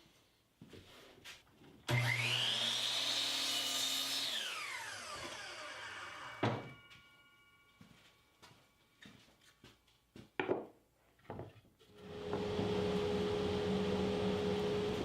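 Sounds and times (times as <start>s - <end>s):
power saw cutting wood: 1.9s - 6.6s, 12.0s - 15.0s.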